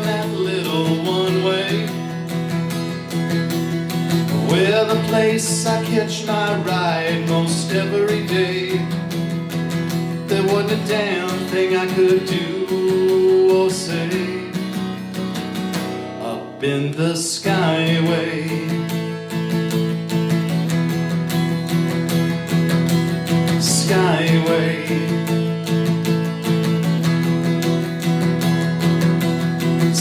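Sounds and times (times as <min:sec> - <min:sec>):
person singing: 0:00.0 - 0:02.0, 0:04.4 - 0:09.0, 0:10.3 - 0:14.7, 0:16.2 - 0:18.9, 0:23.6 - 0:25.5
acoustic guitar strummed: 0:00.0 - 0:30.0.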